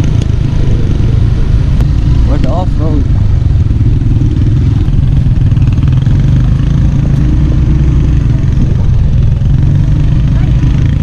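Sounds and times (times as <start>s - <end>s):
motorcycle engine droning: 0.0s - 11.0s.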